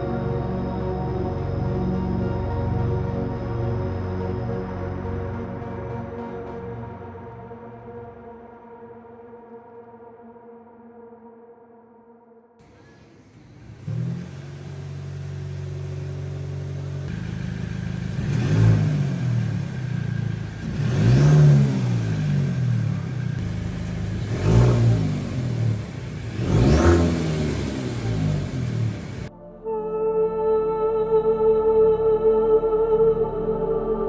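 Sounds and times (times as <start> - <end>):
car engine revving: 12.6 - 29.3
car engine starting and idling: 12.6 - 29.3.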